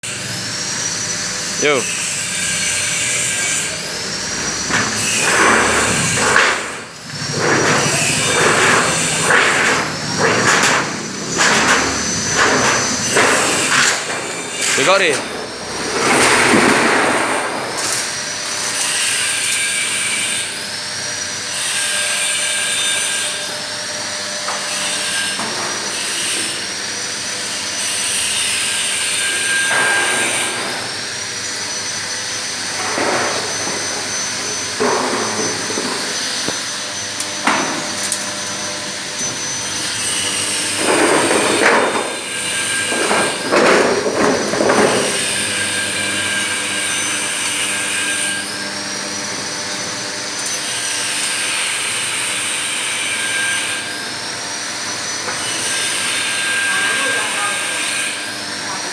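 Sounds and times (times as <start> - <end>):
roll forming machine whining: 2.1 - 19.5, 29.3 - 47.6
metal clatter: 4.3 - 18.0.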